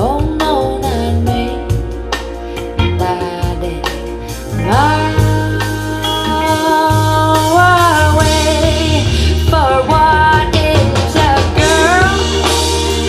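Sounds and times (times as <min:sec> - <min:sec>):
steady bass line: 0:00.0 - 0:13.0
vocal ballad over loudspeakers: 0:00.0 - 0:13.0.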